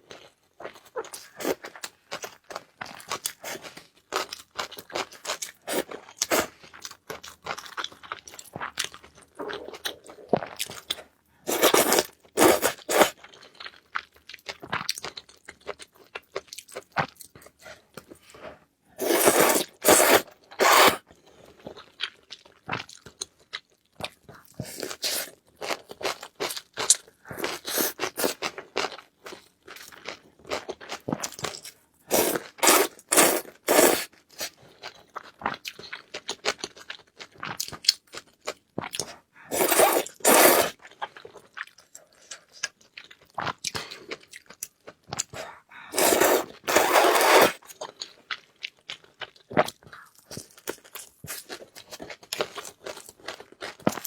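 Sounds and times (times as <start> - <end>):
person crunching and chewing: 0.6 - 13.8, 19.0 - 21.0, 29.7 - 54.0.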